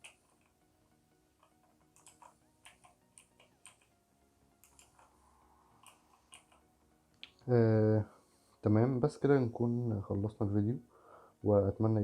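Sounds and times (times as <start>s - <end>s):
mechanical keyboard clicking: 1.4s - 3.9s, 4.6s - 5.1s, 5.8s - 6.6s.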